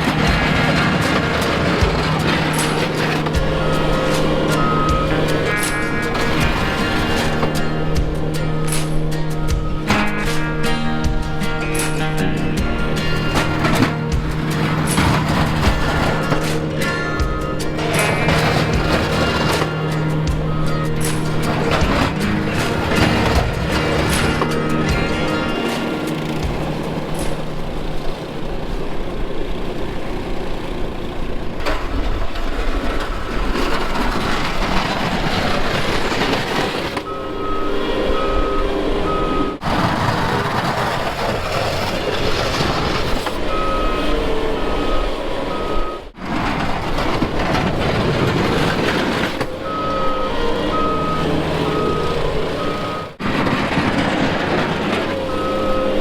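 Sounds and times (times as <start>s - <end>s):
reversing alarm beeping: 0.0s - 30.3s, 31.6s - 56.0s
heavy vehicle engine under load: 0.0s - 56.0s.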